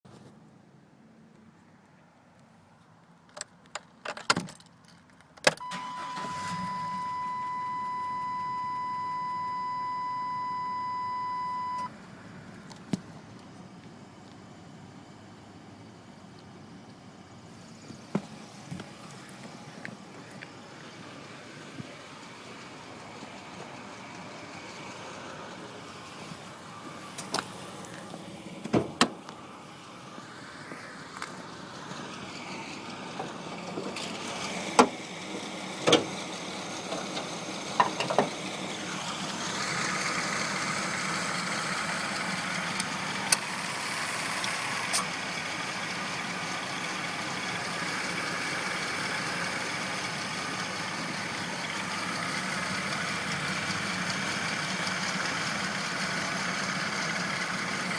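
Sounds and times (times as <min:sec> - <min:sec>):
steady high-pitched tone: 0:05.6 - 0:12.0
van engine running: 0:05.6 - 0:57.9.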